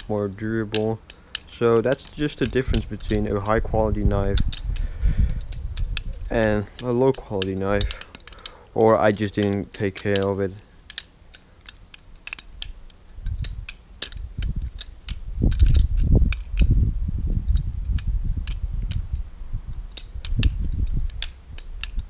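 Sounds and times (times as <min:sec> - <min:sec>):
metallic clicks of knife handles: 0:00.0 - 0:16.8, 0:17.5 - 0:19.1, 0:19.8 - 0:22.0
low rumbling handling noise: 0:00.0 - 0:22.0.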